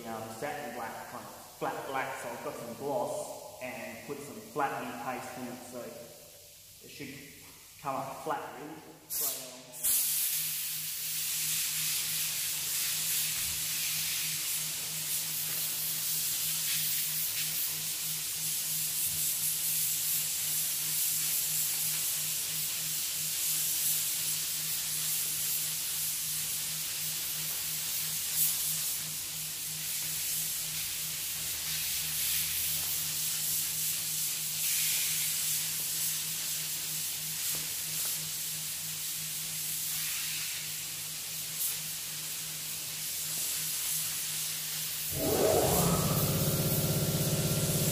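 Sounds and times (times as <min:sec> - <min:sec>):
spray gun hissing: 0:09.1 - 0:29.0, 0:31.6 - 0:47.9
low pulsing hum: 0:45.1 - 0:47.9.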